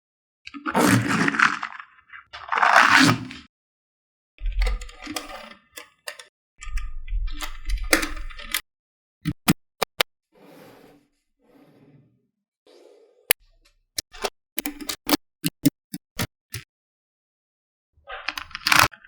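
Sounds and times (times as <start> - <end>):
soft scraping: 10.4 - 13.3.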